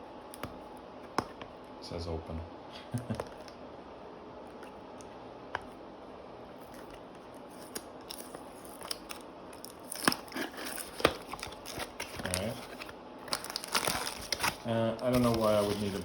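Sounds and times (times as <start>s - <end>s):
packaging clicks and scrapes: 6.6s - 16.0s
cardboard box being opened: 9.9s - 16.0s.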